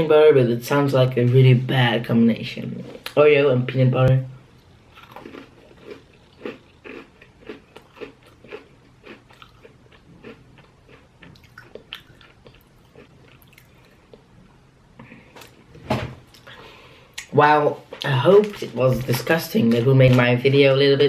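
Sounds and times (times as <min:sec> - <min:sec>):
person chewing crunchy cookie: 0:04.5 - 0:14.5.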